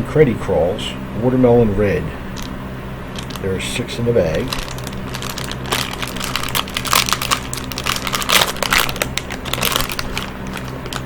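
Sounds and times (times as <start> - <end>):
plastic bag crinkling: 2.3 - 2.5, 3.1 - 3.6, 4.2 - 11.0.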